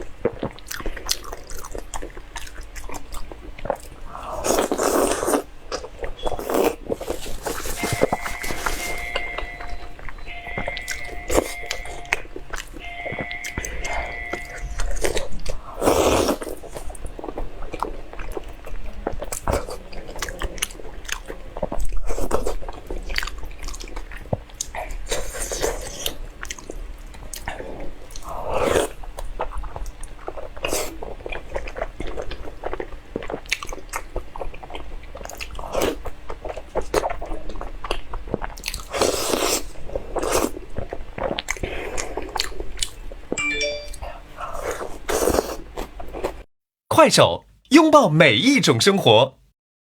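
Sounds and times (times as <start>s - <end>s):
crunching and chewing seafood: 0.0s - 43.4s, 44.3s - 46.5s.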